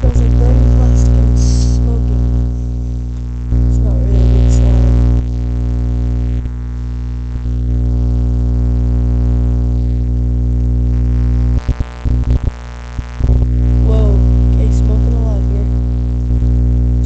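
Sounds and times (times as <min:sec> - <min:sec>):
microwave oven humming: 0:00.0 - 0:17.0.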